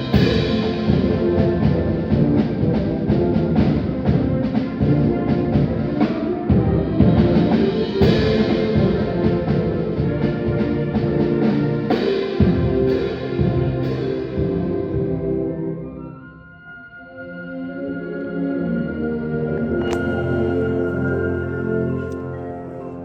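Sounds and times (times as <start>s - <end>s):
concert band playing: 0.0s - 14.0s, 19.8s - 23.0s
drums and timpani beat: 0.0s - 15.2s, 19.8s - 22.2s.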